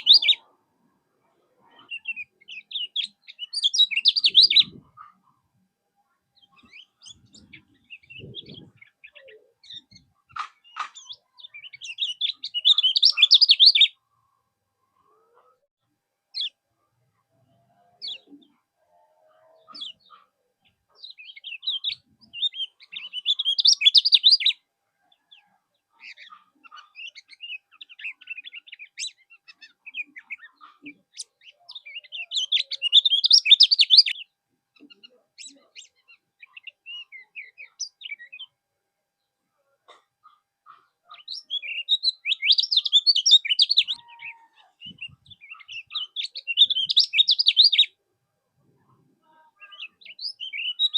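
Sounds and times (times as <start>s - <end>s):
bird chattering song: 0.0s - 0.5s, 1.6s - 5.4s, 6.4s - 14.0s, 16.3s - 16.6s, 19.4s - 24.6s, 25.2s - 38.5s, 39.9s - 48.0s, 49.4s - 50.9s.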